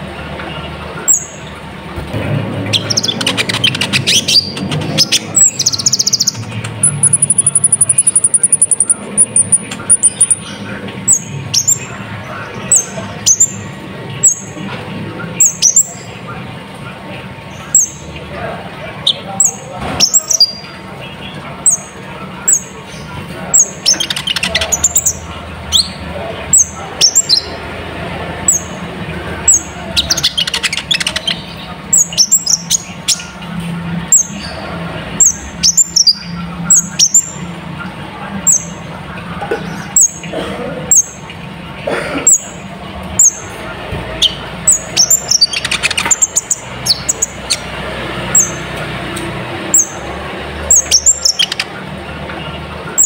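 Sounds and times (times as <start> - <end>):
bird singing high sweeping notes: 2.6 - 13.6
bird chattering phrases: 2.6 - 14.6, 17.4 - 33.4, 38.4 - 48.8, 50.7 - 51.8.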